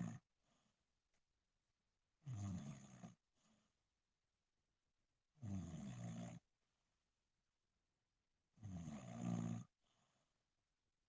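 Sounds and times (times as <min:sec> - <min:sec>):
low pitched snore: 0:00.0 - 0:00.2, 0:02.2 - 0:03.2, 0:05.4 - 0:06.4, 0:08.6 - 0:09.7.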